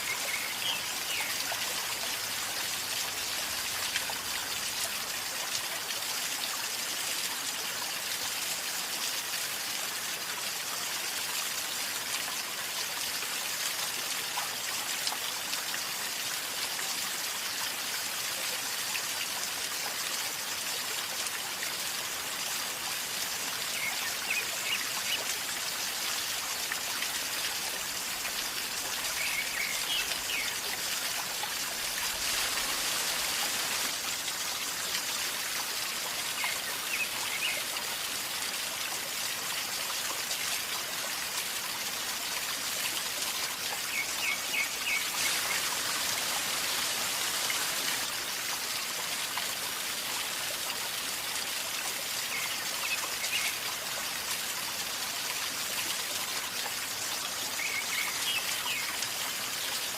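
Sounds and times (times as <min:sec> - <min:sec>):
river water flowing and gurgling: 0:00.0 - 0:59.9.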